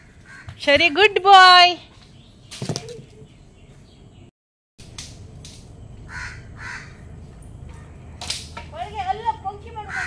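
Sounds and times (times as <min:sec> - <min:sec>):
harsh bird calls: 0:01.9 - 0:04.3, 0:05.8 - 0:08.2.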